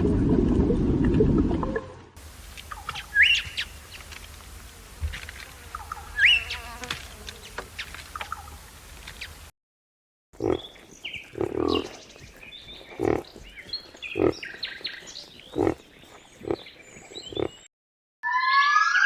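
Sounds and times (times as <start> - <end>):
small birds chirping: 2.2 - 9.5, 10.4 - 17.7
animal grunting: 10.4 - 17.7.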